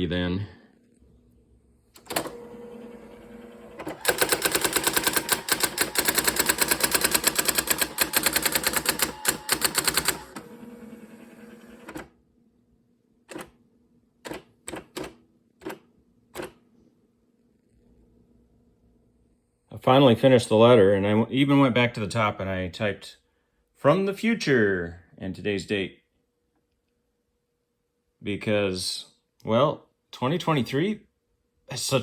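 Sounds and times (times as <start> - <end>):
electronic typewriter printing: 2.0 - 12.1, 13.3 - 13.6, 14.2 - 15.8, 16.4 - 16.6
typewriter motor hum: 2.0 - 12.1.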